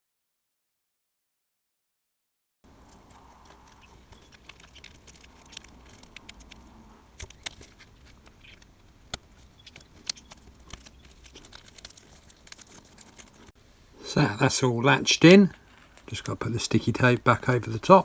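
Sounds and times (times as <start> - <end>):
clicks on ribbon cable connectors: 2.9 - 13.4.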